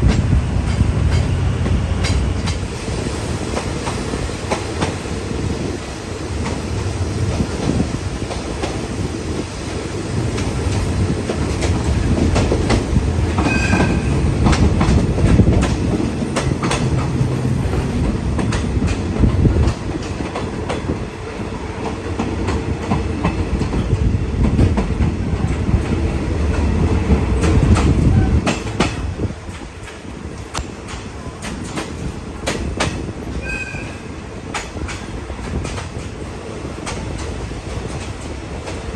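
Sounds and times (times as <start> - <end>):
wheels clicking over rail joints: 0.0 - 2.7, 6.4 - 38.9
train rumbling on rails: 0.0 - 38.9
high squeal: 13.4 - 14.2.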